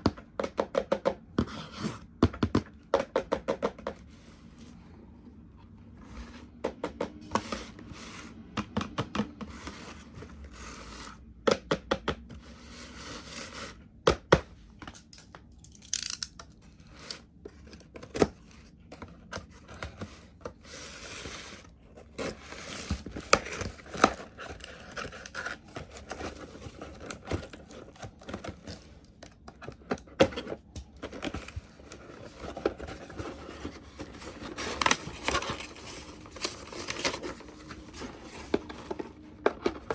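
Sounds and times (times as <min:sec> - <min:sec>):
toy packaging tearing and crinkling: 0:15.7 - 0:17.2, 0:30.2 - 0:39.9.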